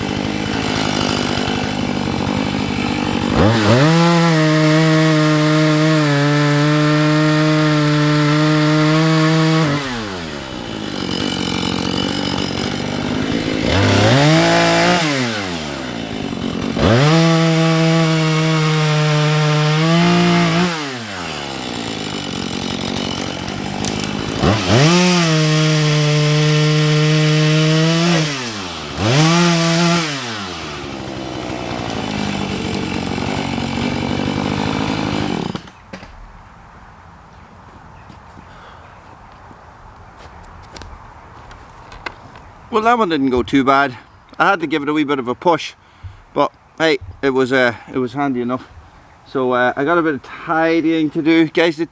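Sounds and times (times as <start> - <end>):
chainsaw cutting and revving: 0.0 - 36.1.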